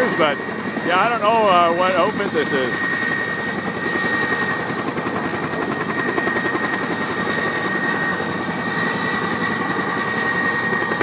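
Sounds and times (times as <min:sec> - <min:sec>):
helicopter rotor chop with whine: 0:00.0 - 0:11.0.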